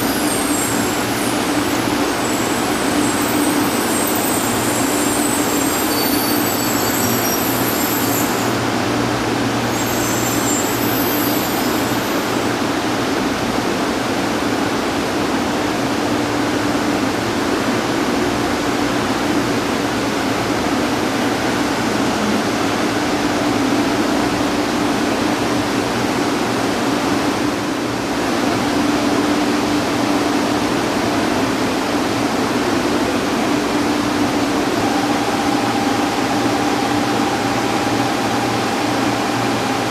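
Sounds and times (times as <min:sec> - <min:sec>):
high-pitched wheel squeals: 0:00.0 - 0:12.8, 0:33.4 - 0:39.9
train rolling noise: 0:00.0 - 0:39.9.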